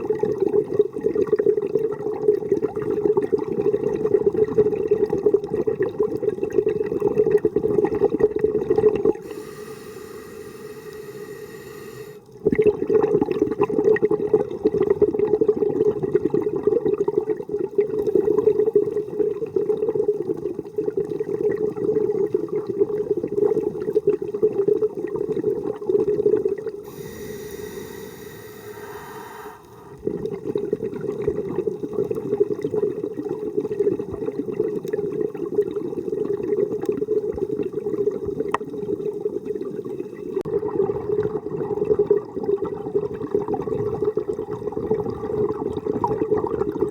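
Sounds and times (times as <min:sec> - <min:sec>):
gurgling exhaust bubbles underwater: 0:00.0 - 0:46.9
regulator hissing inhale: 0:09.2 - 0:12.3, 0:26.8 - 0:30.0.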